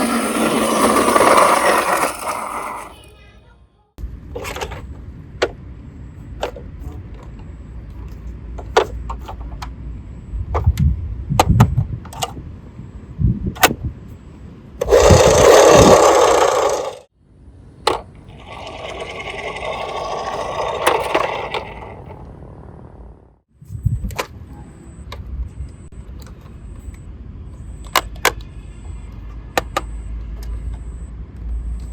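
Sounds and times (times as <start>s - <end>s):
toy car rattling down a slope: 0.0s - 3.0s, 14.8s - 17.1s, 18.3s - 22.3s
toy cars clacking: 0.0s - 3.1s, 14.8s - 17.1s, 17.9s - 22.8s.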